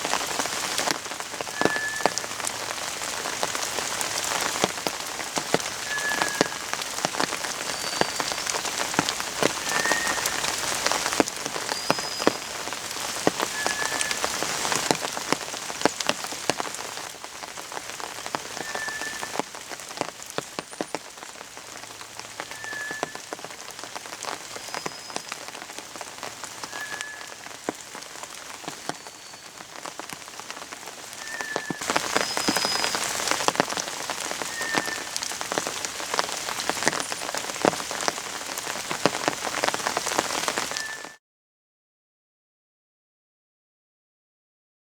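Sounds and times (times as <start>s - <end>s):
rain pattering: 0.0s - 41.2s
thrush whistling song: 1.4s - 2.7s, 5.6s - 14.9s, 18.1s - 19.5s, 22.2s - 23.5s, 24.3s - 27.9s, 28.5s - 30.2s, 31.0s - 37.4s, 40.2s - 41.2s.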